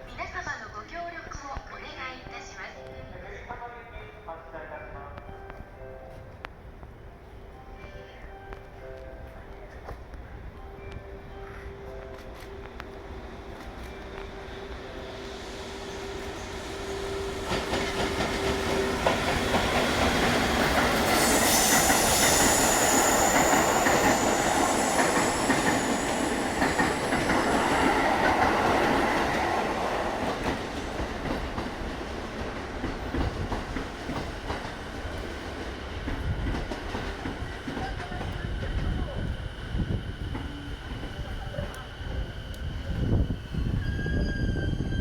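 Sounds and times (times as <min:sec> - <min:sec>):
train wheels clattering: 0:15.2 - 0:38.9
high wheel squeal: 0:21.1 - 0:27.6.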